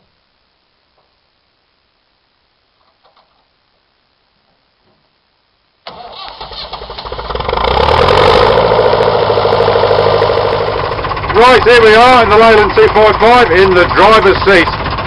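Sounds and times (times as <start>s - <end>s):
diesel tractor engine starting: 5.8s - 15.0s.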